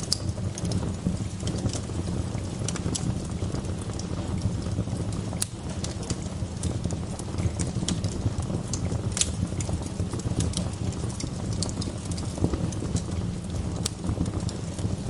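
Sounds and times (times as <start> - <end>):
steady low rumble: 0.0 - 15.0
wood fire crackling and popping: 0.0 - 15.0.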